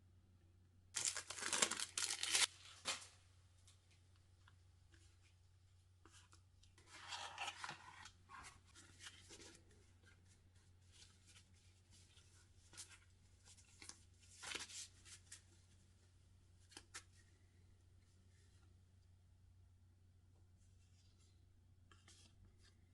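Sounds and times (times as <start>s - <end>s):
packaging rustling: 1.0s - 3.0s.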